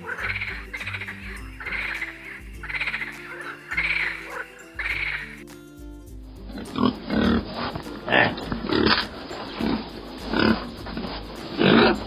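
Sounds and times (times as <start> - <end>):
held music notes: 0.0 - 12.0
farm animal grunting: 6.5 - 10.7, 11.5 - 12.0.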